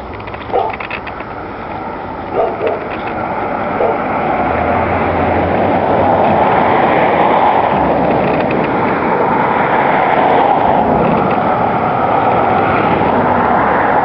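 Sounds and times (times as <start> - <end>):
loud rushing noise: 1.6 - 14.0.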